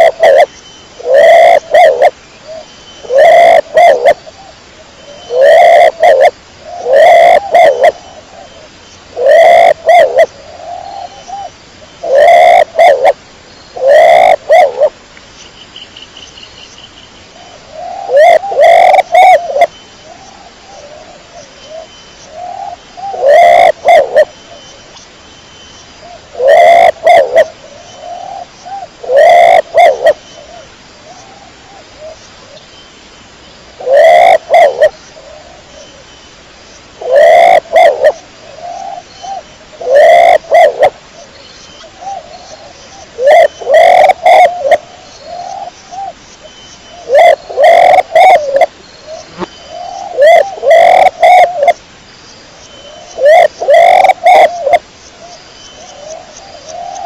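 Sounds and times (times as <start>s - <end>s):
pigeon cooing: 0.0s - 2.1s, 3.1s - 4.2s, 5.2s - 8.4s, 9.2s - 13.2s, 13.8s - 14.9s, 17.7s - 19.7s, 22.4s - 24.3s, 26.3s - 28.4s, 29.0s - 30.2s, 33.8s - 35.5s, 37.0s - 38.2s, 39.8s - 40.9s, 43.2s - 44.9s, 47.1s - 48.7s, 49.4s - 51.8s, 53.2s - 54.8s.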